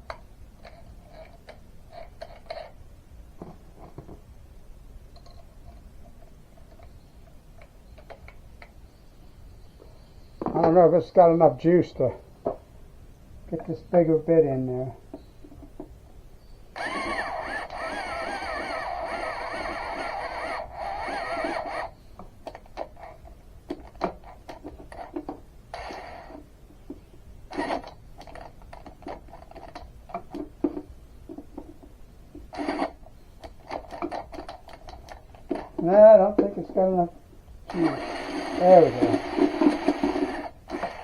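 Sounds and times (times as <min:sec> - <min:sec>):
electric drill straining: 0:16.8 - 0:22.0, 0:25.7 - 0:26.4, 0:27.5 - 0:28.4, 0:32.5 - 0:33.0, 0:37.7 - 0:41.0.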